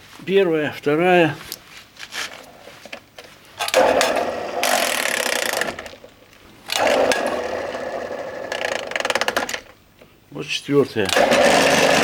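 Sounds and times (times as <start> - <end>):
metalworking lathe running: 3.6 - 6.0, 6.7 - 9.6, 11.1 - 12.0.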